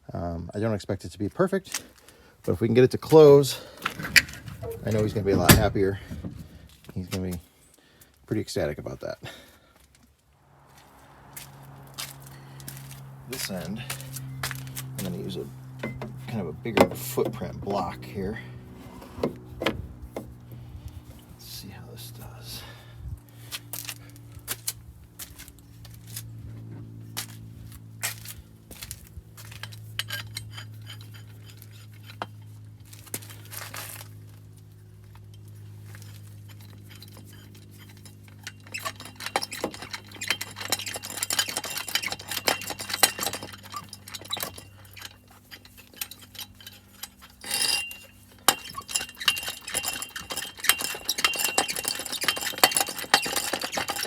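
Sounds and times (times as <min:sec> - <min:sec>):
steady low hum: 0:10.4 - 0:54.0
metal clinking and clicking: 0:29.5 - 0:32.5, 0:35.3 - 0:54.0.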